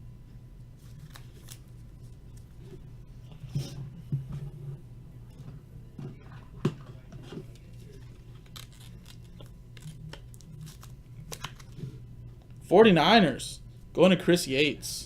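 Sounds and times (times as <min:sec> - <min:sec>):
low steady hum: 0:00.0 - 0:15.0
trading cards rustling and clicking: 0:00.8 - 0:02.5, 0:07.4 - 0:12.0.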